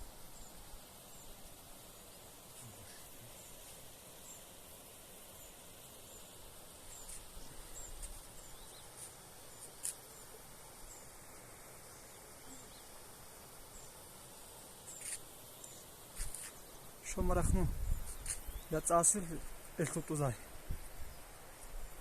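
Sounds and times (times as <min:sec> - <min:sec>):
quiet outdoor hiss: 0:00.0 - 0:22.0.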